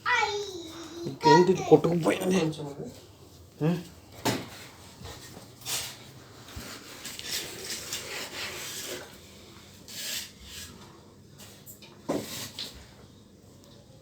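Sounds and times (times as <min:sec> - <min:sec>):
rubbing and scraping strokes: 0:05.6 - 0:10.9.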